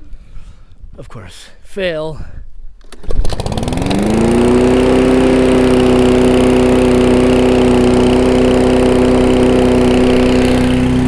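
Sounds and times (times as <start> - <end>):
lawnmower engine running: 2.9 - 11.0.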